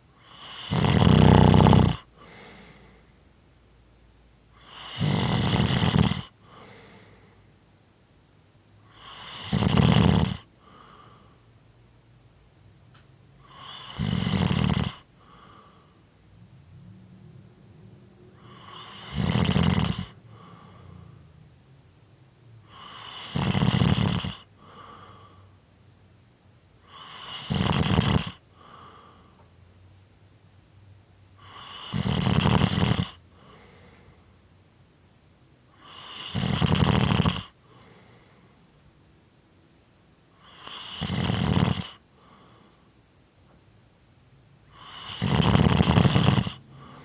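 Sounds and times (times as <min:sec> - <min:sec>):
person snoring: 0:00.2 - 0:02.9, 0:04.6 - 0:07.0, 0:08.9 - 0:11.1, 0:13.4 - 0:15.7, 0:18.4 - 0:21.3, 0:22.7 - 0:25.4, 0:26.9 - 0:29.2, 0:31.4 - 0:34.0, 0:35.8 - 0:38.0, 0:40.4 - 0:42.4, 0:44.7 - 0:47.0
quiet breath: 0:02.0 - 0:03.4, 0:06.2 - 0:07.7, 0:10.4 - 0:11.6, 0:14.9 - 0:19.2, 0:19.9 - 0:21.5, 0:24.2 - 0:25.8, 0:28.4 - 0:29.8, 0:33.1 - 0:34.6, 0:37.4 - 0:39.0, 0:41.9 - 0:43.2, 0:46.0 - 0:47.0.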